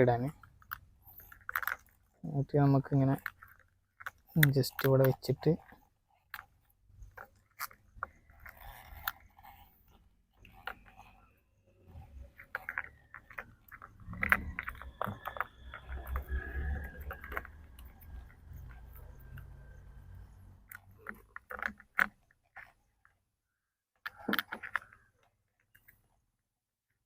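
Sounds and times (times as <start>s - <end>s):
plastic clicks and crinkling: 0.2s - 23.2s, 24.0s - 26.2s.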